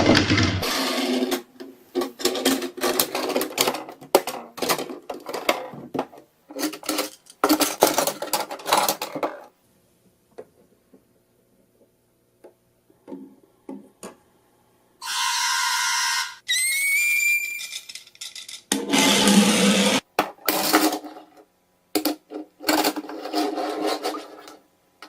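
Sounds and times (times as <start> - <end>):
toy pieces clattering: 6.5 - 9.5, 17.3 - 18.7.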